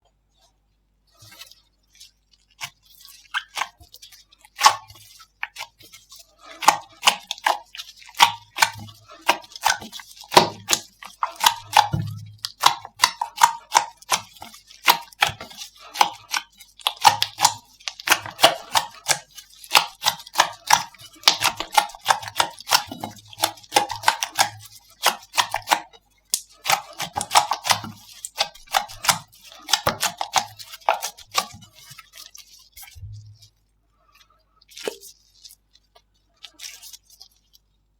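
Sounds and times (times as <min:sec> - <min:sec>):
slime clicking and popping: 0:11.4 - 0:15.4, 0:16.0 - 0:31.4.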